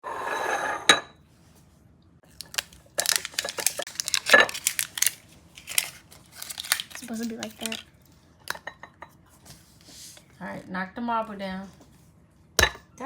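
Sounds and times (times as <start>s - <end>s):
crinkly plastic wrapping crackling: 2.3s - 7.9s.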